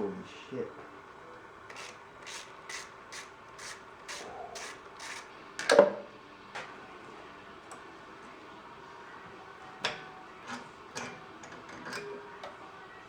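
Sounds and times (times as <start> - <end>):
ratchet wrench clicking: 1.7 - 5.3.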